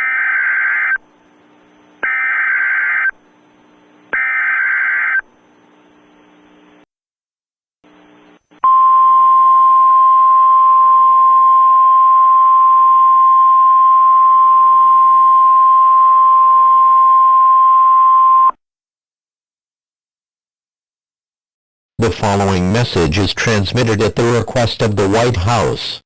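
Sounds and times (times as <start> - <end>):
loud steady high beep: 8.6 - 18.5.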